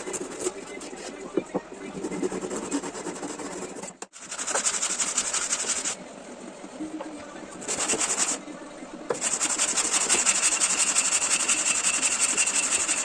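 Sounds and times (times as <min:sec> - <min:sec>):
wood rasping by hand: 0:01.9 - 0:06.0.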